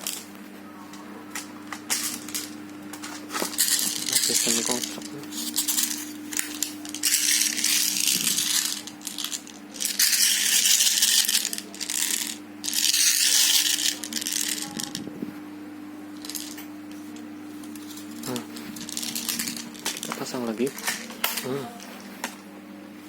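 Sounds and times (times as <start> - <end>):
plastic pellets rattling: 1.8 - 15.0, 16.2 - 16.6, 17.7 - 20.9.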